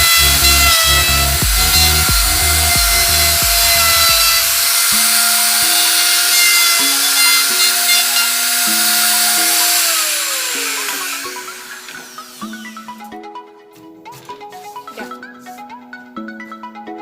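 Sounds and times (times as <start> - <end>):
power tool motor whining: 0.0 - 13.0
background music: 0.0 - 17.0.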